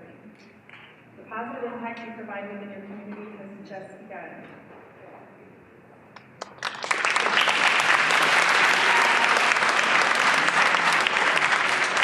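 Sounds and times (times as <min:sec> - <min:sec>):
audience applauding: 0:06.4 - 0:12.0.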